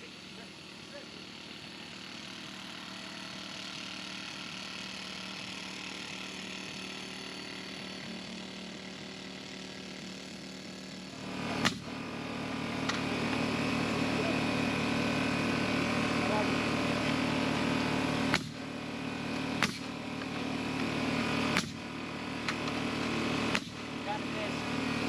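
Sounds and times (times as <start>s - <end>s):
steady mechanical hum: 0.0s - 25.0s
sharp crack: 19.6s - 20.3s.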